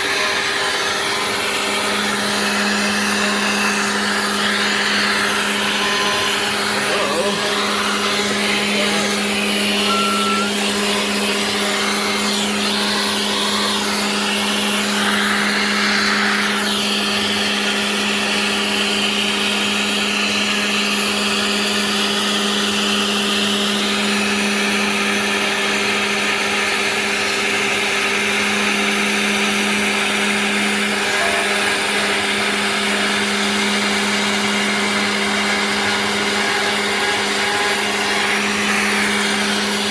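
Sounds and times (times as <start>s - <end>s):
bit grinding workpiece: 0.0s - 19.5s, 30.4s - 39.9s
router spindle humming: 0.0s - 39.9s.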